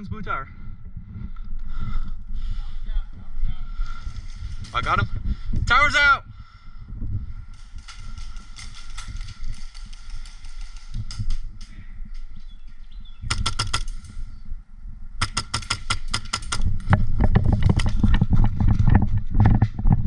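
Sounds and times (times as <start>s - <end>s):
airsoft guns firing: 13.3s - 14.2s, 15.2s - 16.8s.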